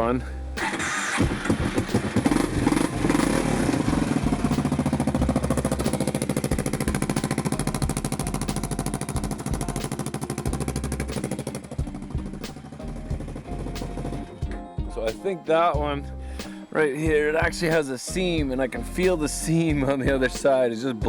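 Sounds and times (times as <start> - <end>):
rough engine idling: 0.6 - 14.4.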